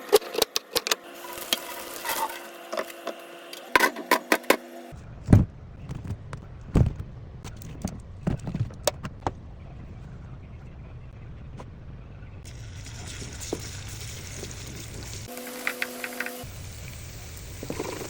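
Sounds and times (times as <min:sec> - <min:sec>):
hiss: 0:12.5 - 0:18.0.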